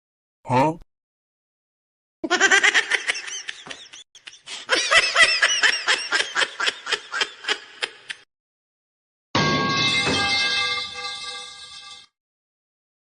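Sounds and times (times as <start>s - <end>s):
high-pitched laughter: 2.2s - 8.2s.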